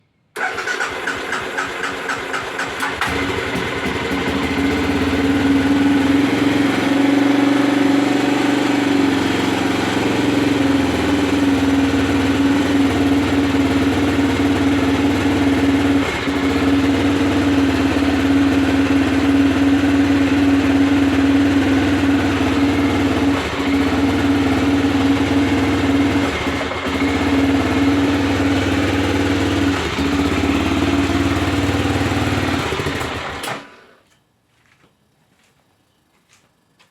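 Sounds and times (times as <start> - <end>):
motorcycle engine misfiring: 0.4 - 5.4.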